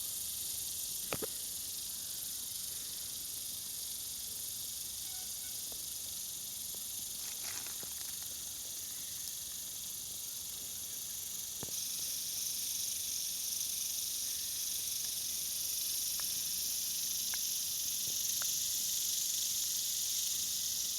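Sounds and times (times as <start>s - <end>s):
faint ticks: 16.1s - 16.4s, 17.3s - 18.6s.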